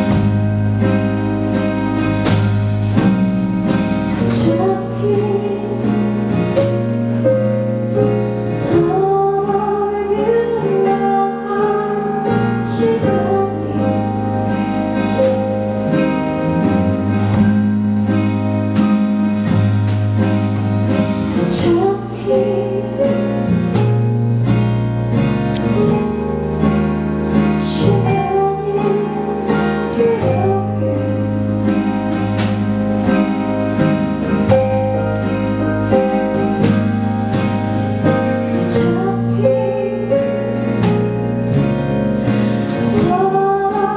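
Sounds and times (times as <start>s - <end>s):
pop band playing: 0.0s - 43.9s
woman singing: 4.2s - 6.8s, 8.4s - 14.8s, 21.3s - 23.8s, 27.4s - 32.0s, 38.0s - 41.2s, 42.3s - 43.9s.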